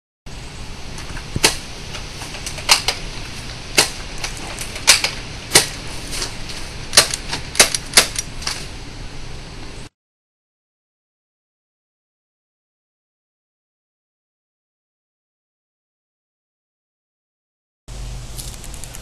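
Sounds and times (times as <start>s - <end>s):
steady background hiss: 0.3s - 9.9s, 17.9s - 19.0s.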